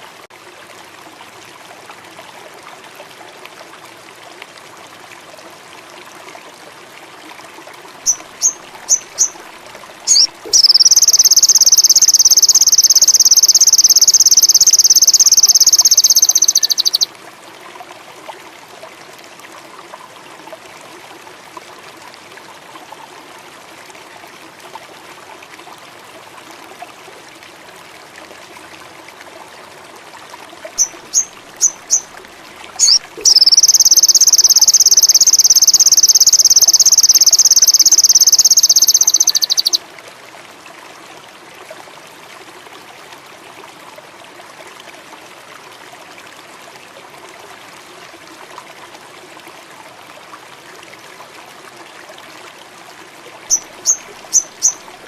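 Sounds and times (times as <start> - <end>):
running water: 0.0 - 55.0
bird chirping and trilling: 8.1 - 9.4, 10.1 - 17.1, 30.8 - 32.1, 32.8 - 39.8, 53.5 - 54.9.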